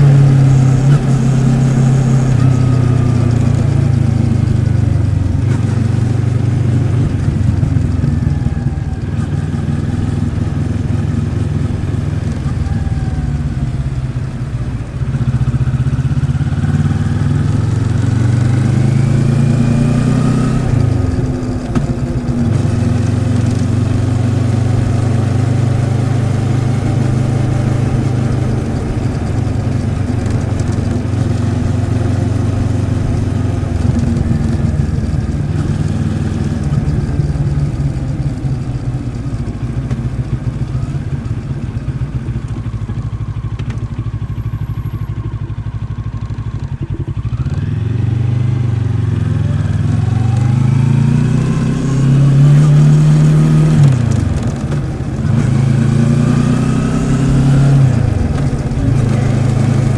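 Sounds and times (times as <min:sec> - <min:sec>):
motorcycle engine accelerating: 0:00.0 - 0:59.9.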